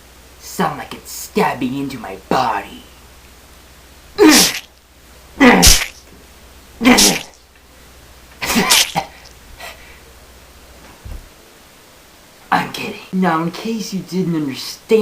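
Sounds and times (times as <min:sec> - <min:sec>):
person crying out in mock pain: 0:04.2 - 0:04.6, 0:05.4 - 0:05.9, 0:06.8 - 0:07.3.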